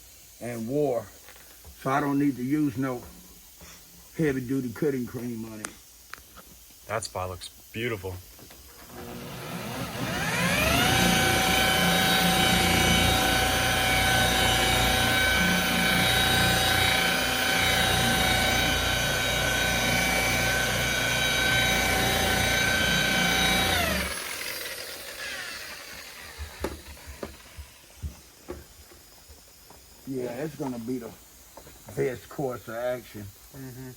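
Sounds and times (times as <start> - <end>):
electric polisher whining: 8.8 - 28.7.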